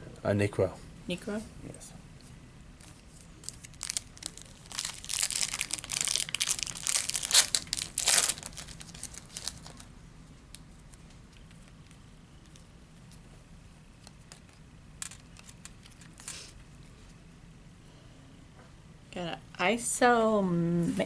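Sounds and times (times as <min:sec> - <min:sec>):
wrapper being torn and crinkled: 0:02.8 - 0:09.9, 0:14.0 - 0:16.4.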